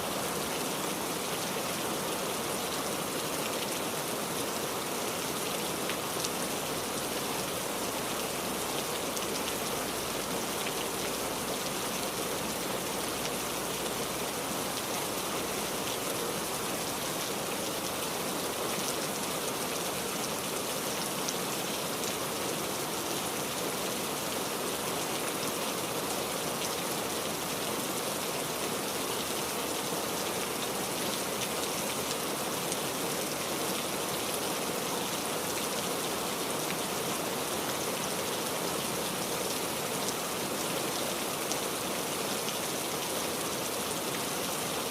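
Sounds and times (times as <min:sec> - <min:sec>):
steady rain falling: 0:00.0 - 0:44.9.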